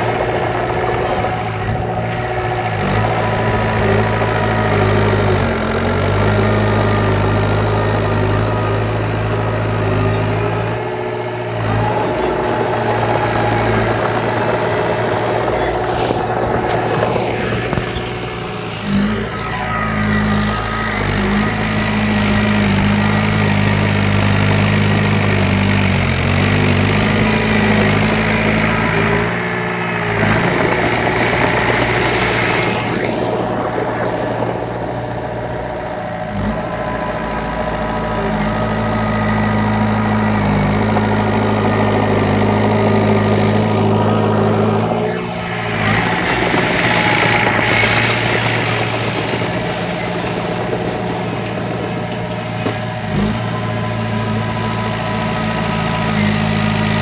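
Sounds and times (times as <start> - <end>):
heavy equipment diesel engine running: 0.0 - 57.0.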